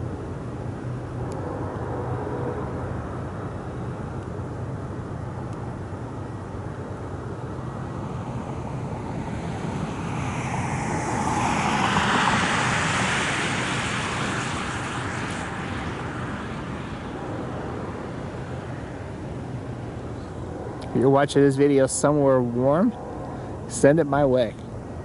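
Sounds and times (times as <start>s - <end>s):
jet airliner passing: 0.0s - 25.0s.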